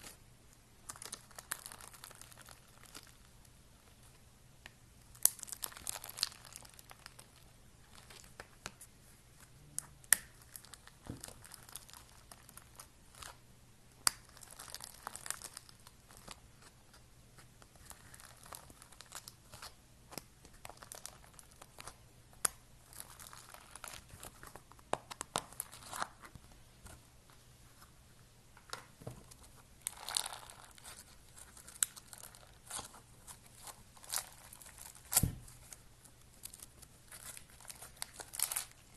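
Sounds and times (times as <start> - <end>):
slime squishing and popping: 5.1 - 7.4, 14.0 - 16.4, 37.2 - 38.8.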